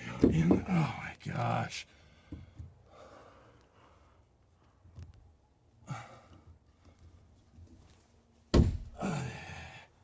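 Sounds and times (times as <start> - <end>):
man sighing: 9.0 - 9.8.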